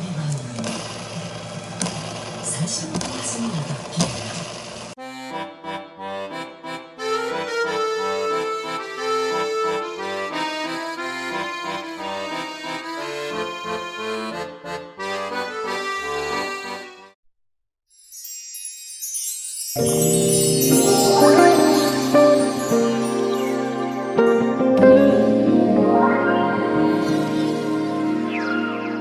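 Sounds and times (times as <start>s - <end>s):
melody over held chords: 5.0s - 16.8s, 19.7s - 29.0s
faint high shimmering sound: 19.8s - 24.4s.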